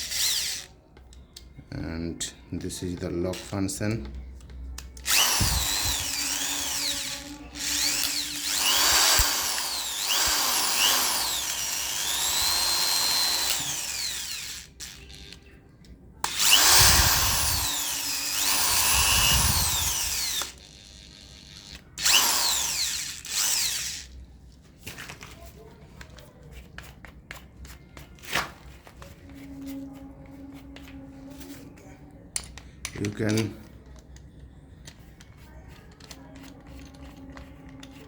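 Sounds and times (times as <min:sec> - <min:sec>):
electric drill motor whine: 0:00.0 - 0:00.7, 0:05.0 - 0:15.4, 0:16.2 - 0:24.1.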